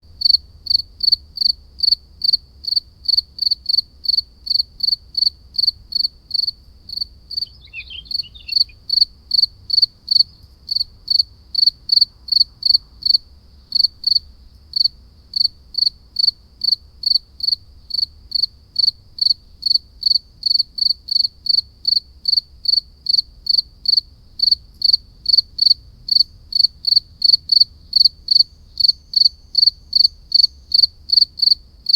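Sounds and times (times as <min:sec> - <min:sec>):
cricket chirping: 0:00.2 - 0:31.9
brief falling call: 0:07.5 - 0:08.7.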